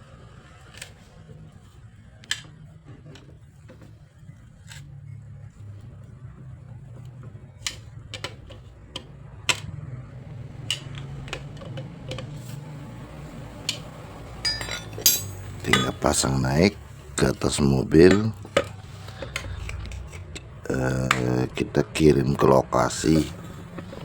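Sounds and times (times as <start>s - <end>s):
low steady hum: 3.5s - 24.0s
tools clicking and tapping: 10.6s - 12.4s, 13.7s - 16.3s.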